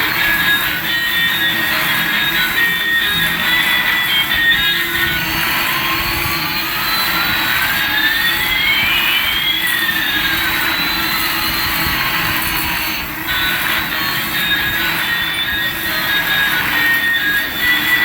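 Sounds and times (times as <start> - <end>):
toy jet engine rush: 0.0 - 18.0
whining tones gliding: 0.0 - 18.0.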